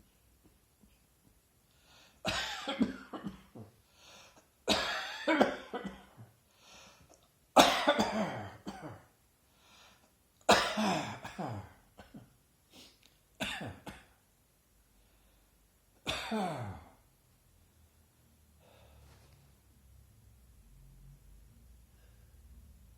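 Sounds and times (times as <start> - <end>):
person coughing: 2.3 - 3.8, 4.7 - 6.3, 7.6 - 9.1, 10.5 - 12.3, 13.4 - 14.2, 16.1 - 16.9
person breathing in: 18.6 - 19.2.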